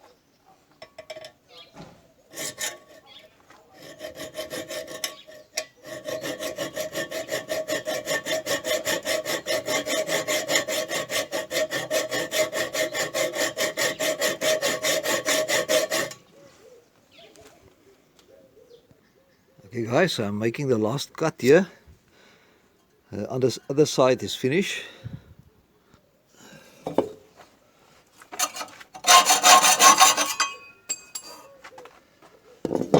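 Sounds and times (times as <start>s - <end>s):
hacksaw cutting steel tube: 2.3s - 3.1s, 3.8s - 16.2s, 28.3s - 31.5s.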